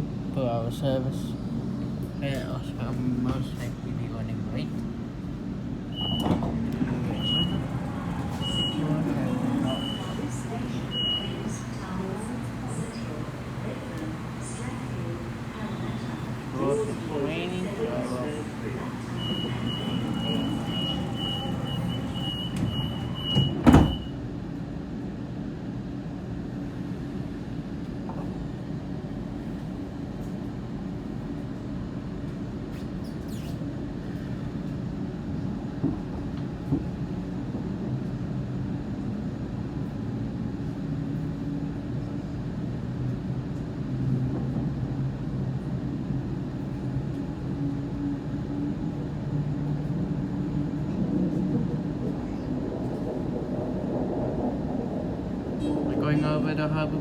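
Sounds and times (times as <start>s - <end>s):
train running hum and rumble: 0.0s - 57.0s
train doors shutting with thud: 6.0s - 24.2s
rapid beeping warning tone: 9.6s - 11.7s, 18.6s - 24.1s.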